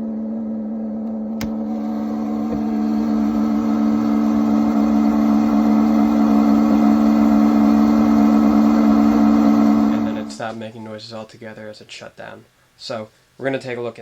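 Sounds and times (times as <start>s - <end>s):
diesel heater blower humming: 0.0s - 10.6s.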